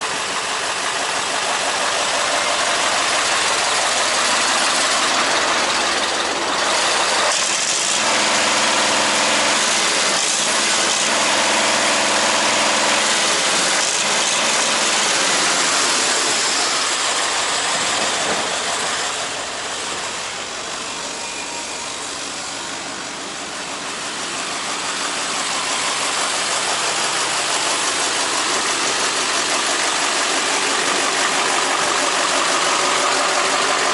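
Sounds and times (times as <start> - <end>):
diesel truck engine running: 0.0 - 33.9.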